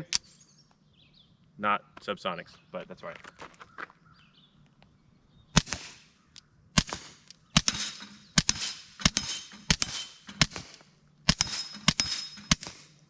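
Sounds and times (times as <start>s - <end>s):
suppressed pistol shots: 5.5s - 6.2s, 6.8s - 13.0s
steel plate ringing: 7.6s - 10.5s, 11.3s - 12.7s.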